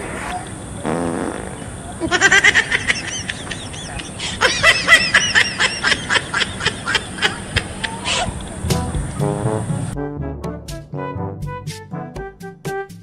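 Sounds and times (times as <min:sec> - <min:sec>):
fart sound: 0:00.0 - 0:01.8
high-pitched giggling: 0:02.0 - 0:08.6.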